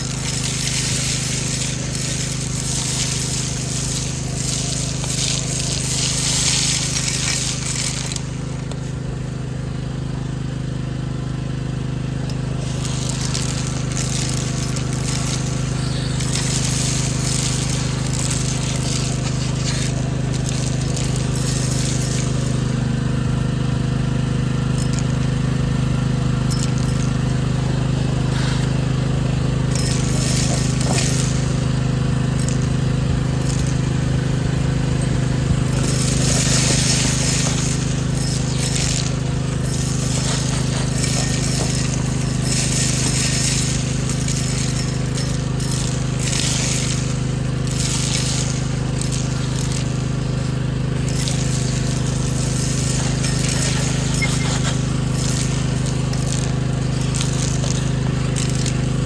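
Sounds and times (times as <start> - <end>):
debris rattling in vacuum: 0.0 - 9.4, 12.1 - 59.0
vacuum cleaner motor humming: 0.0 - 9.8, 12.0 - 59.0.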